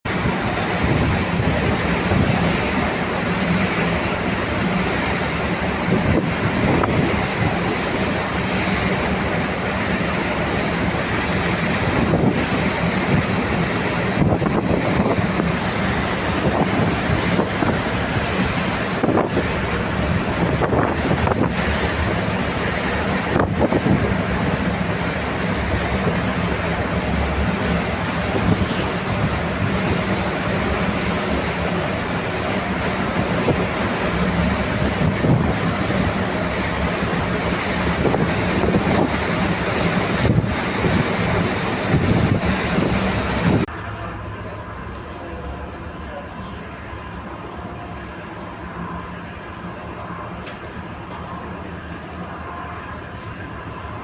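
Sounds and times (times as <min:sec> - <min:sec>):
river waves washing: 0:00.0 - 0:44.9
wind rushing over microphone: 0:00.1 - 0:03.3, 0:05.2 - 0:10.4, 0:11.0 - 0:43.7.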